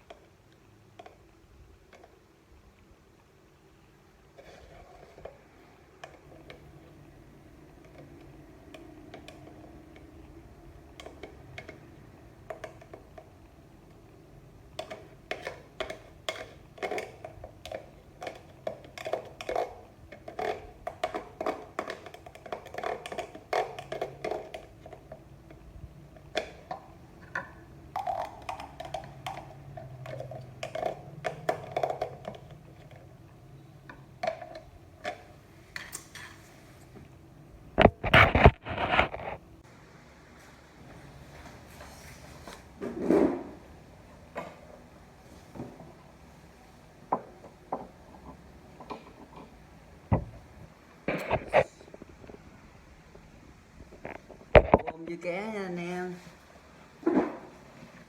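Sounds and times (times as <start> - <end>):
hard objects knocking and clicking: 14.7 - 33.2, 37.8 - 39.4, 47.1 - 52.4, 53.2 - 55.0.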